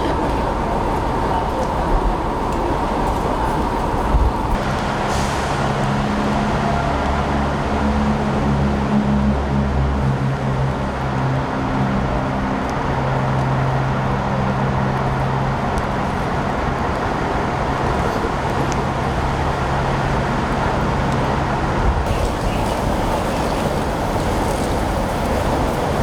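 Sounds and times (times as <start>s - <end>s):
vehicle engines idling: 0.0s - 8.4s, 10.7s - 26.0s
constant roar: 0.0s - 26.0s.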